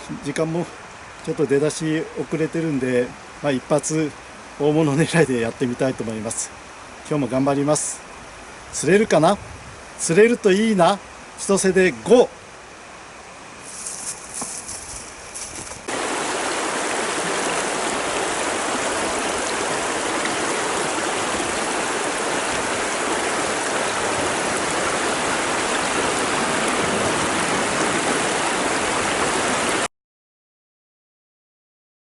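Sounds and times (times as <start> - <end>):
river water rushing over rocks: 15.4 - 29.9.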